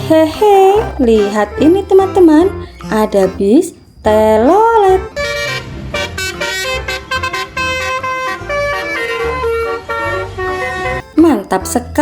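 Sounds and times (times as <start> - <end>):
multi-tone musical bus horn: 0.0 - 12.0.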